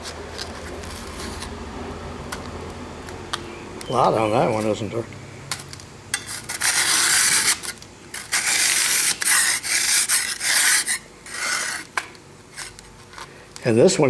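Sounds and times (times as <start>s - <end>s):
scraper rasping rust off metal: 6.1s - 12.8s.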